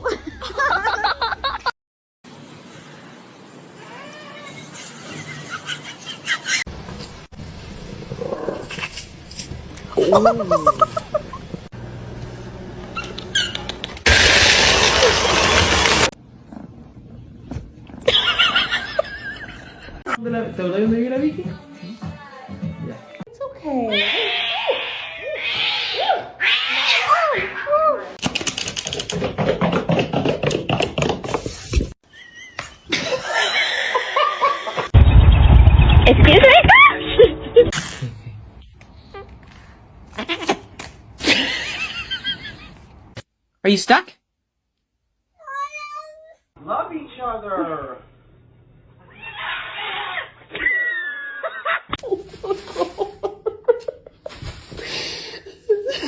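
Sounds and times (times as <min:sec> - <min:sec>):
cat meowing: 0:45.4 - 0:46.4.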